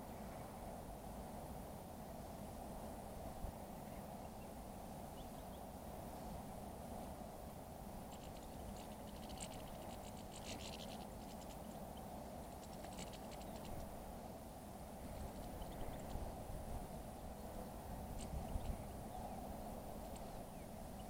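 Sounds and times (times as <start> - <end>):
steady background noise: 0.0 - 21.0
birds pecking at seed: 7.9 - 14.1, 15.0 - 16.4, 17.2 - 21.0.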